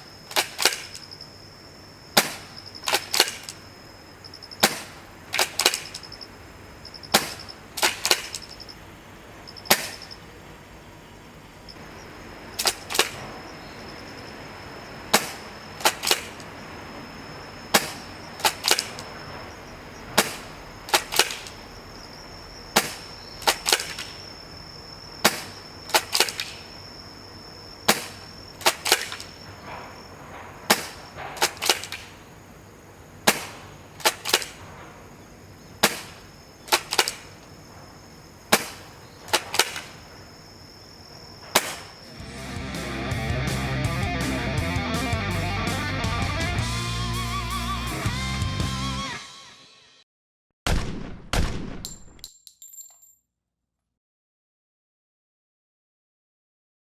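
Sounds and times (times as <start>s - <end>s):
airsoft shotgun shot snapping: 0.3s - 1.2s, 2.2s - 3.7s, 4.6s - 6.2s, 7.1s - 8.6s, 9.7s - 10.2s, 12.6s - 13.4s, 15.1s - 16.5s, 17.7s - 19.3s, 20.1s - 21.7s, 22.8s - 24.3s, 25.2s - 26.8s, 27.9s - 29.9s, 30.6s - 32.2s, 33.2s - 34.7s, 35.8s - 37.4s, 38.5s - 40.1s, 41.5s - 42.1s, 50.7s - 52.2s
shotgun pump racking clack: 0.3s - 1.2s, 2.8s - 3.7s, 5.4s - 6.2s, 7.2s - 8.6s, 12.6s - 13.2s, 15.2s - 16.5s, 17.8s - 19.1s, 20.2s - 21.6s, 22.9s - 24.2s, 25.4s - 26.6s, 27.9s - 29.4s, 30.7s - 32.1s, 33.3s - 34.6s, 36.7s - 37.5s.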